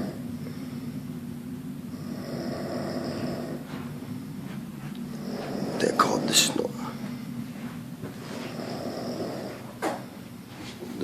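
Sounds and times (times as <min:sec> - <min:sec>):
person snoring: 0:00.0 - 0:01.0, 0:01.9 - 0:03.8, 0:05.0 - 0:07.0, 0:08.4 - 0:09.7.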